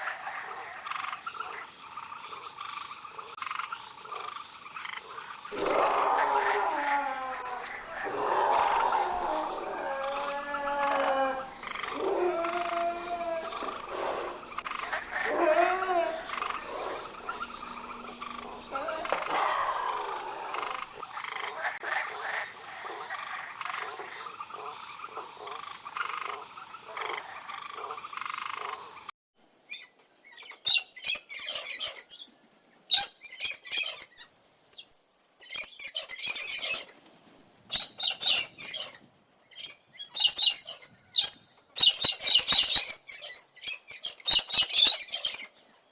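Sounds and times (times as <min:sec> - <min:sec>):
frogs croaking: 0:00.0 - 0:29.1
high chirps and squeaks: 0:39.6 - 0:45.5.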